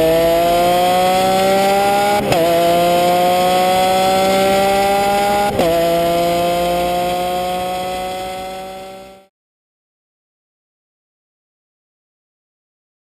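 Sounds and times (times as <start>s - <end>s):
car engine accelerating: 0.0s - 9.3s.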